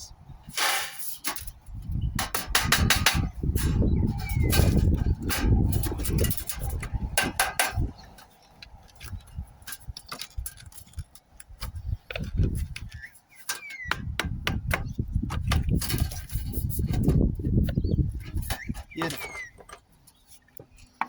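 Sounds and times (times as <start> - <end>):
knocks of roof tiles handled: 2.2 - 8.3, 9.6 - 20.0.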